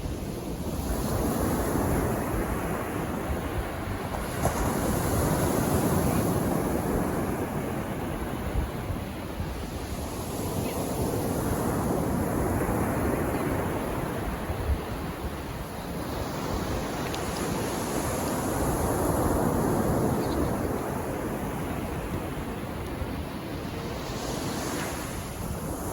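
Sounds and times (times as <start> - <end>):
calm sea waves on sand: 0.0 - 25.9
wind on microphone: 0.0 - 25.9.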